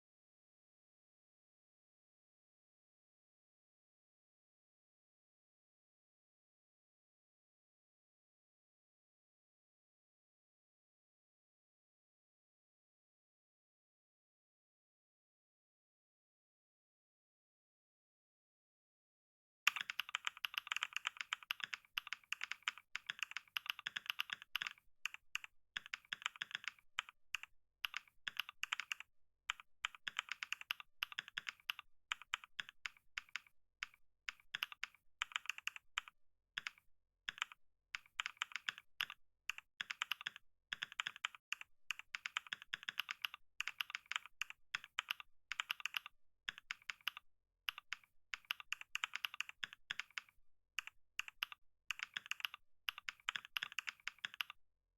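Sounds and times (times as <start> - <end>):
keyboard typing: 19.7 - 54.6.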